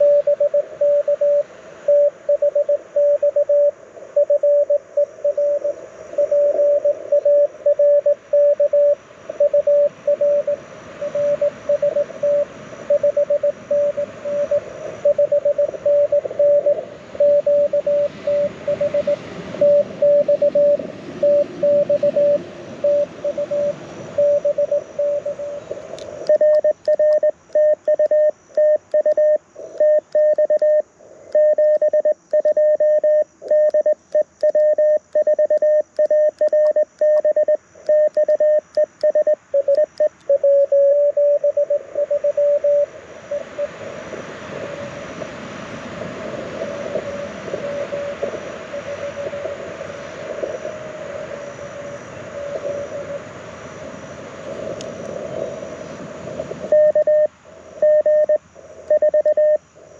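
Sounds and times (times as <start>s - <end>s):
morse code tone: 0.0s - 25.6s, 26.2s - 43.7s, 56.6s - 59.6s
radio band hiss: 0.0s - 32.2s, 33.1s - 59.9s.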